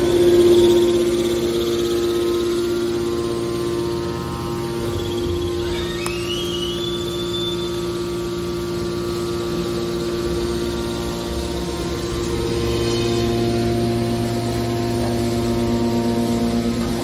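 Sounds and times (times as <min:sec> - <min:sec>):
hydraulic baler humming: 0:00.0 - 0:17.0
rising squeal: 0:00.2 - 0:08.7.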